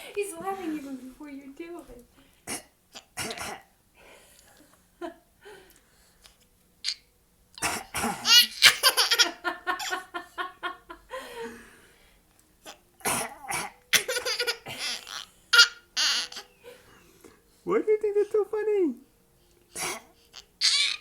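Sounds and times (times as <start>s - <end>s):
adult coughing: 2.5s - 3.7s, 7.6s - 8.5s, 12.7s - 14.9s, 19.8s - 20.1s
young child laughing: 8.2s - 10.9s.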